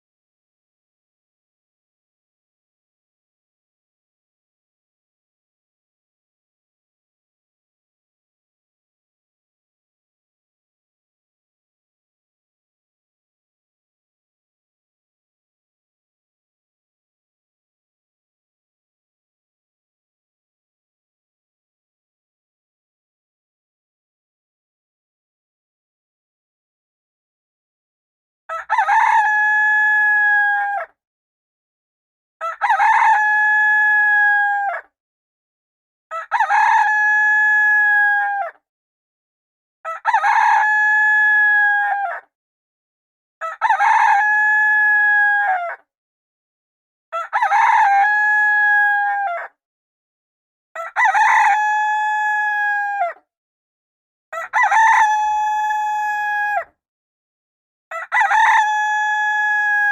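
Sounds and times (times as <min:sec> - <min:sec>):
rooster crowing alarm: 0:57.9 - 0:59.9.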